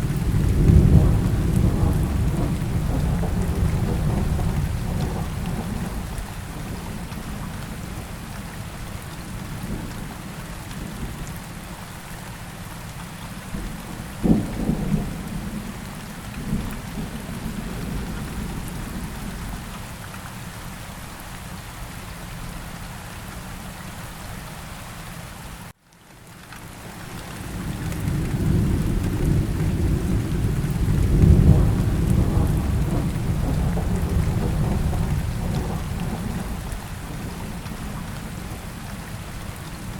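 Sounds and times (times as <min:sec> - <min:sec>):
rolling thunder: 0:00.0 - 0:08.1, 0:13.5 - 0:19.7, 0:27.5 - 0:39.9
steady rain: 0:00.0 - 0:39.9.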